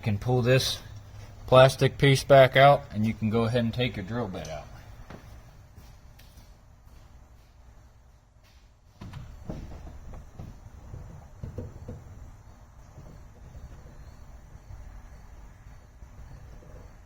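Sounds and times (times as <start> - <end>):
plastic parts knocking and rubbing: 9.0 - 14.5.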